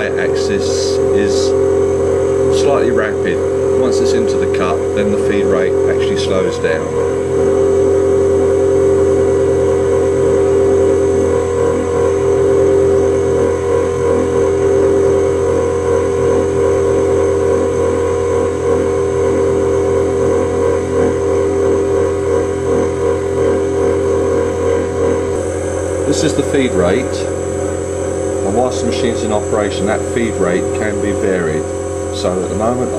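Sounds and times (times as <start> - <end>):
milling machine cutting metal: 0.0 - 32.9.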